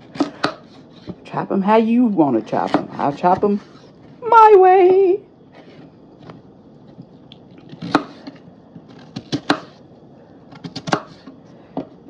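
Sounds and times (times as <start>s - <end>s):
knife chopping on cutting board: 2.6s - 3.4s, 7.8s - 8.2s, 9.0s - 9.8s, 10.6s - 11.3s.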